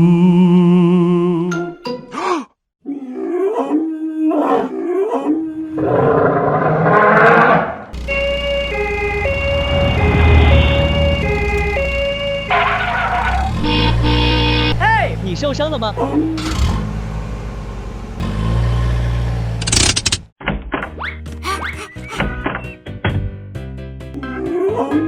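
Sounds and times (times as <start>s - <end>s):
creature roaring: 4.3s - 7.8s
two-tone ambulance siren: 8.0s - 15.1s
low engine rumble: 8.0s - 20.3s.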